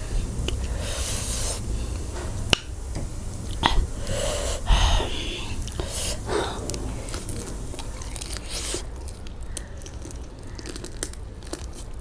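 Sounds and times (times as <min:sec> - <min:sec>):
hissing breaths through mouth: 0:00.0 - 0:09.2.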